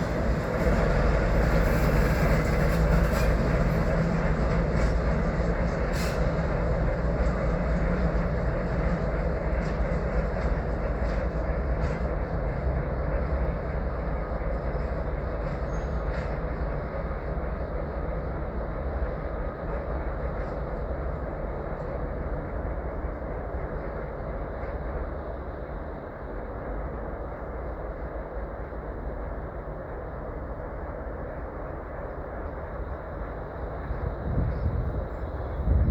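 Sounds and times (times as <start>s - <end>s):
diesel locomotive engine drone: 0.0s - 35.9s.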